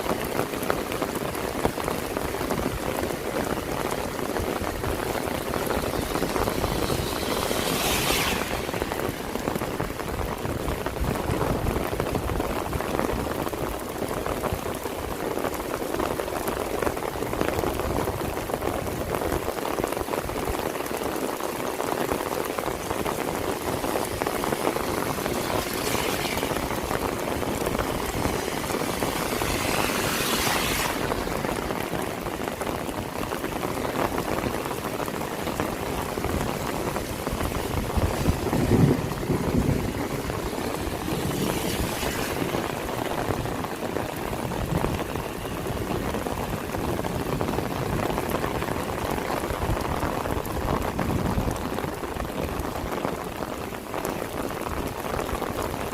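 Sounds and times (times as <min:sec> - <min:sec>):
heavy rain pattering: 0:00.0 - 0:55.9.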